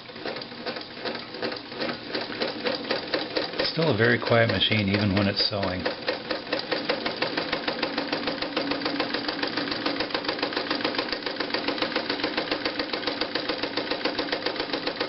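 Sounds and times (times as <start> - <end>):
sewing machine stitching: 0.0 - 15.0.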